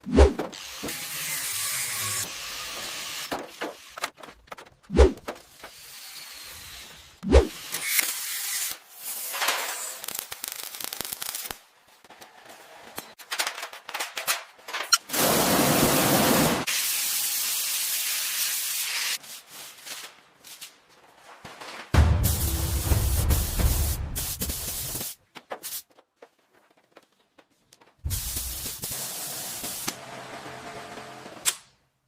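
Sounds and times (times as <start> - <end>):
sharp hit: 22.0 - 24.4
air hissing from a gun: 28.1 - 29.9.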